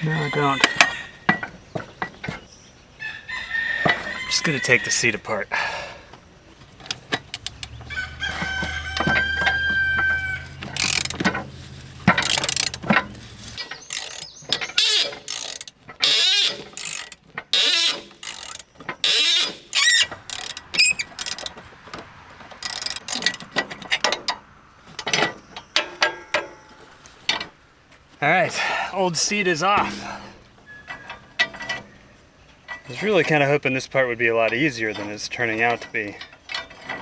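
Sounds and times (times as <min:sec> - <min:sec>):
rooster crowing: 0:00.0 - 0:01.7, 0:02.9 - 0:06.2, 0:07.3 - 0:11.2
short wavering squeaks: 0:00.0 - 0:28.1, 0:29.0 - 0:37.0
metal clanks and knocks: 0:00.0 - 0:37.0.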